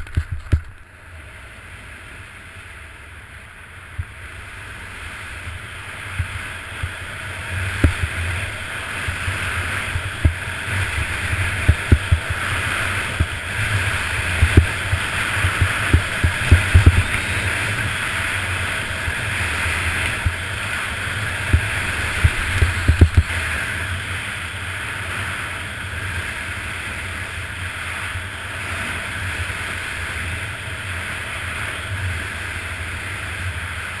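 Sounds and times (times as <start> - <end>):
skis scraping over snow: 0.0 - 34.0
wind rumble on microphone: 0.0 - 34.0
skis thumping on bumps: 6.0 - 19.2, 20.0 - 23.7.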